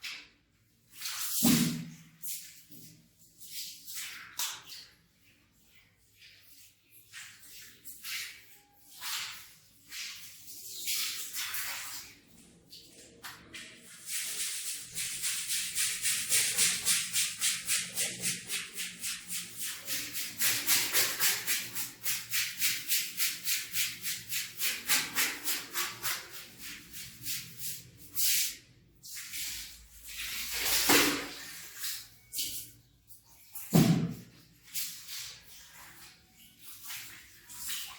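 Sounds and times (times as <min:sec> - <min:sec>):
brush scrubbing a rug: 0:13.8 - 0:30.8.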